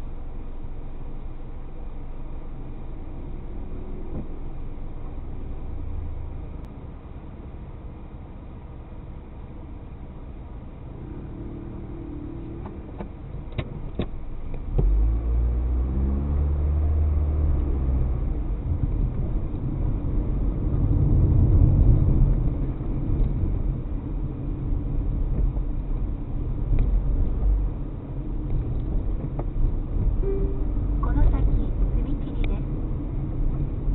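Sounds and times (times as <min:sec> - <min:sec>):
road noise: 0:00.0 - 0:33.9
car engine accelerating: 0:10.7 - 0:33.9.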